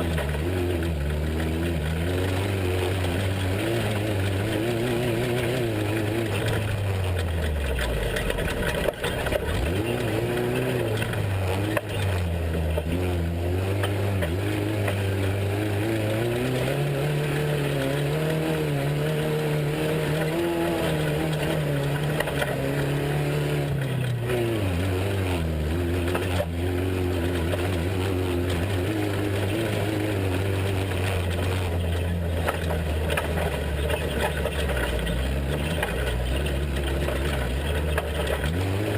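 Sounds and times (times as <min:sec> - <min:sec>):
truck engine running: 0:00.0 - 0:38.9.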